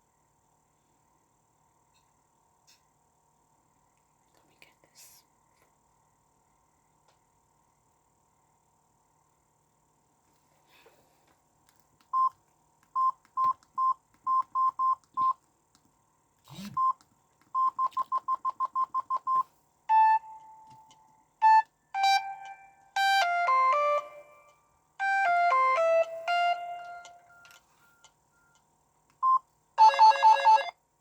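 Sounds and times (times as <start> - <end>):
phone keypad beeps: 12.1 - 12.4, 13.0 - 15.4, 17.6 - 24.2, 25.0 - 28.6, 29.2 - 30.7
polyphonic ringtone melody: 21.4 - 28.0, 29.8 - 30.8.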